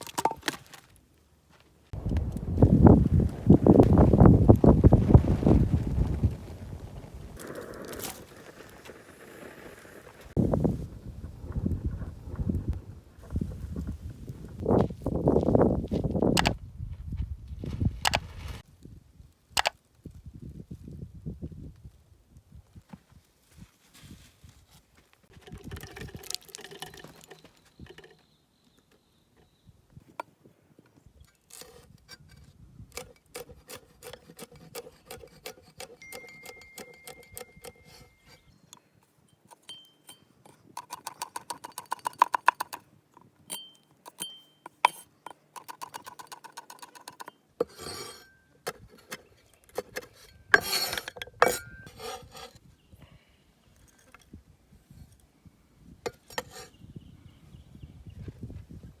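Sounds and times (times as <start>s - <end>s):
scraping and tapping on wood: 30.9s - 52.6s, 56.1s - 56.7s.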